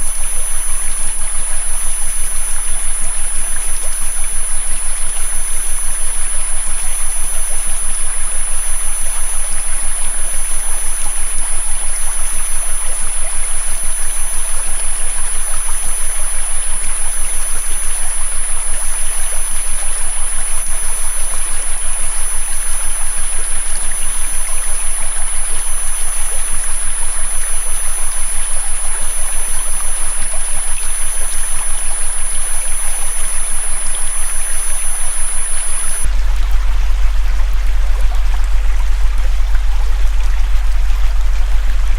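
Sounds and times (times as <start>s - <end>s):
river water rushing: 16.6s - 41.9s
faint low tone: 26.8s - 41.9s.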